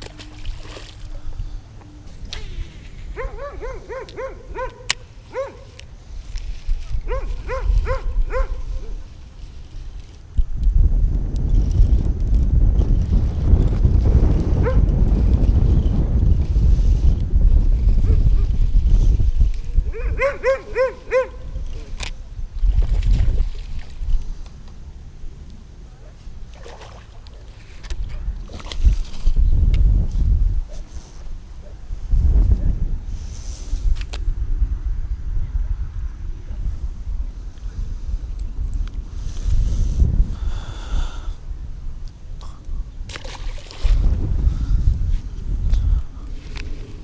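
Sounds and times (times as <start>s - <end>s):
dog yipping barks: 3.2s - 5.8s, 7.1s - 8.9s, 19.9s - 21.4s.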